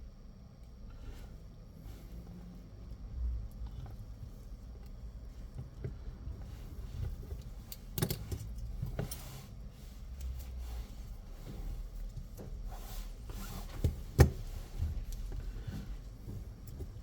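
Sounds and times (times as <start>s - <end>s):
low steady rumble: 0.0s - 17.0s
small tools clicking and tapping: 7.4s - 9.3s.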